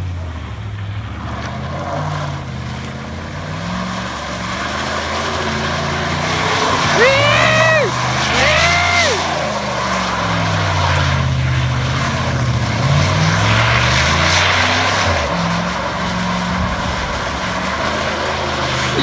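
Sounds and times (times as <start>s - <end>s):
truck engine revving: 0.0s - 19.0s
tyres rushing on dirt: 0.0s - 19.0s
high wailing cry: 6.4s - 9.3s.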